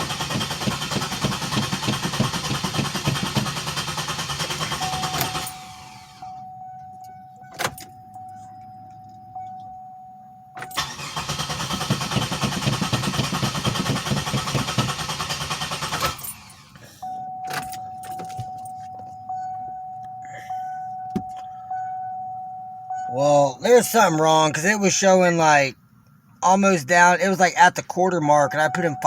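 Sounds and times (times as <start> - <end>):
car starter cranking engine: 0.0 - 6.5, 10.6 - 19.6.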